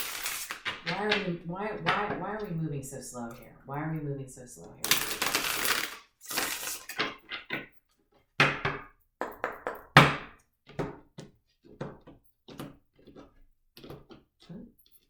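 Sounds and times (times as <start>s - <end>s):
cards shuffling: 0.0s - 1.0s, 4.8s - 7.0s.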